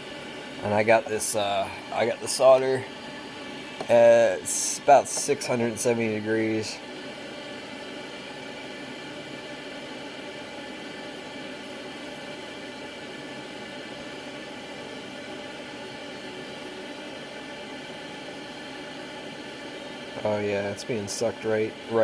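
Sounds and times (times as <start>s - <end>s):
fume extractor fan running: 0.0s - 22.0s.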